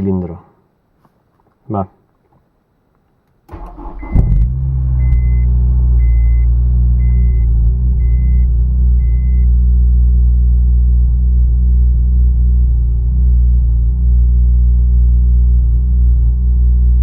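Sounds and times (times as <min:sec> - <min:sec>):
car engine starting and idling: 0:03.5 - 0:14.9
short electronic beeps: 0:05.0 - 0:09.4.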